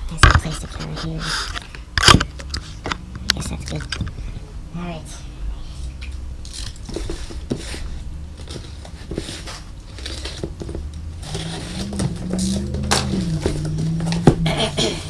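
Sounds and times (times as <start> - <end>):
cardboard box being opened: 6.6 - 15.0.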